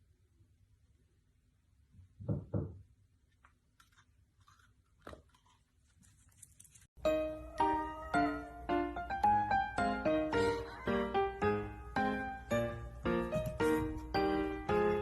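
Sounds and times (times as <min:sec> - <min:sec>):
piano music: 0:07.0 - 0:15.0.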